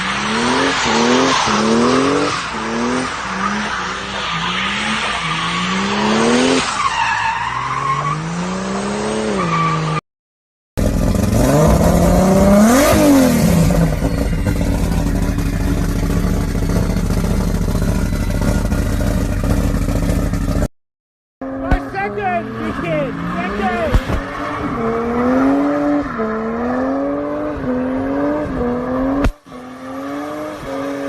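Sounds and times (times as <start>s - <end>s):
car engine revving: 0.0s - 6.7s, 10.8s - 20.7s, 21.4s - 31.0s
car engine idling: 14.0s - 20.6s.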